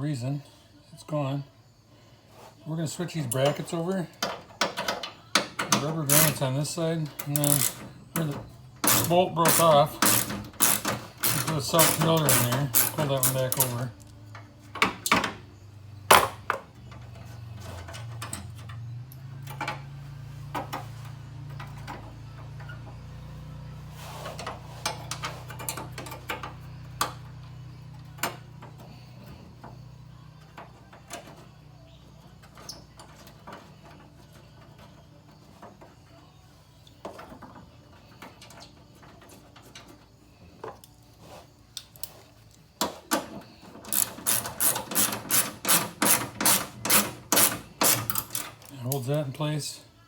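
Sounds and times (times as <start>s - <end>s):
metal parts clicking and knocking: 3.3s - 6.5s, 7.1s - 14.2s, 43.1s - 49.2s
hand tool rasping strokes: 5.9s - 6.6s, 7.2s - 7.8s, 8.8s - 13.9s, 43.9s - 48.5s.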